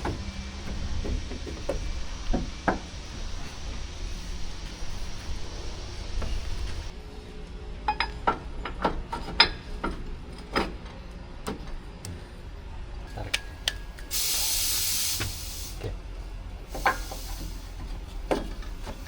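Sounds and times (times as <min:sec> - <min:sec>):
steady hiss: 0:14.0 - 0:15.9, 0:16.6 - 0:18.0.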